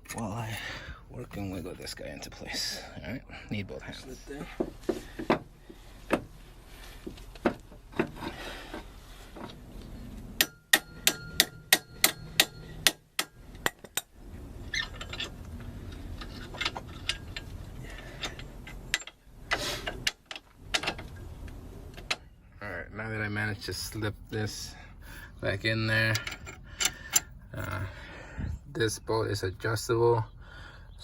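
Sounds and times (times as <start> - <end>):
metal knocks clanks and scraping: 7.0 - 22.3, 25.8 - 28.0
sharp ringing metal taps: 10.4 - 14.1.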